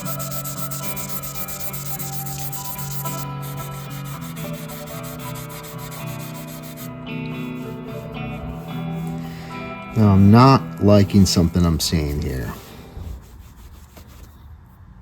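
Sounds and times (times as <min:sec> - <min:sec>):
sandpaper sanding: 0:00.0 - 0:09.2, 0:12.0 - 0:14.4
background music: 0:00.0 - 0:12.6.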